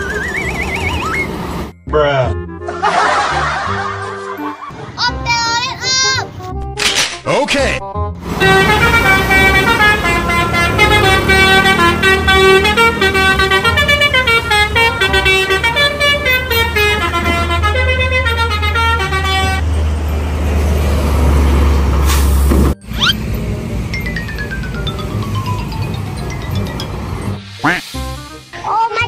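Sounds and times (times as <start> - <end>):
bus engine rumble: 0.0 - 1.8, 8.2 - 27.8
multi-tone bus horn tune: 8.2 - 19.7.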